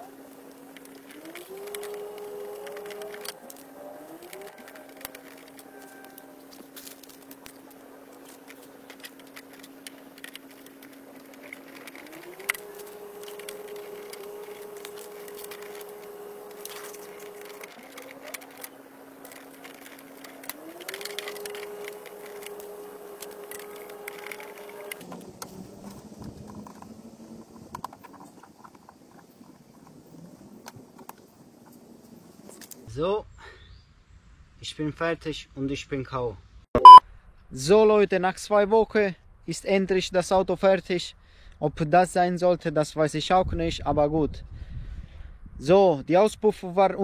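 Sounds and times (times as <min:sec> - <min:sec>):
small motor humming: 0:00.0 - 0:26.8.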